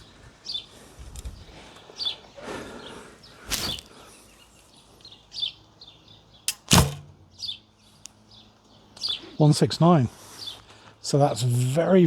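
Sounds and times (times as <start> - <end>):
birds chirping faintly: 0.0 - 11.2
bow release click: 6.5 - 7.2
bowstring thump and twang: 6.5 - 7.4.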